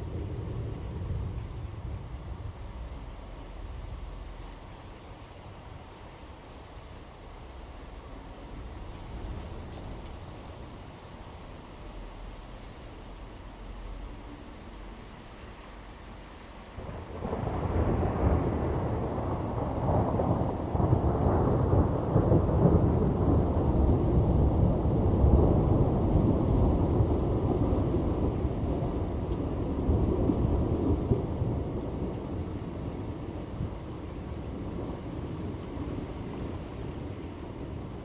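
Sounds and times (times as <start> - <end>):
thunder rumbling: 0.0 - 4.7, 16.7 - 38.0.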